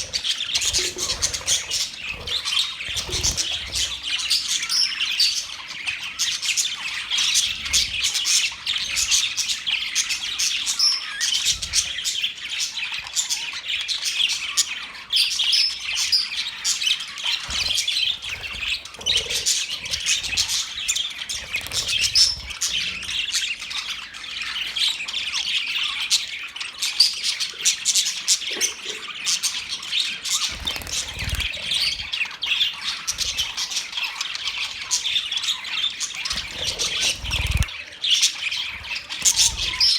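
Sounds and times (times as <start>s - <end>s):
budgerigars chirping and warbling: 0.0s - 39.9s
budgerigar squawk: 30.1s - 39.9s.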